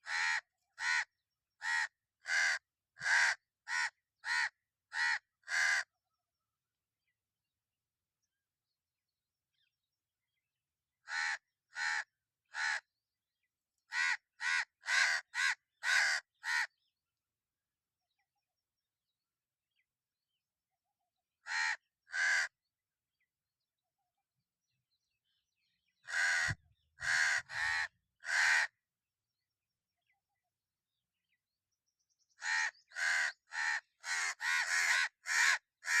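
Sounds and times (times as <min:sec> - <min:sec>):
crow cawing: 0:00.0 - 0:05.9, 0:11.0 - 0:12.9, 0:13.9 - 0:16.7, 0:21.4 - 0:22.6, 0:26.0 - 0:28.8, 0:32.4 - 0:36.0.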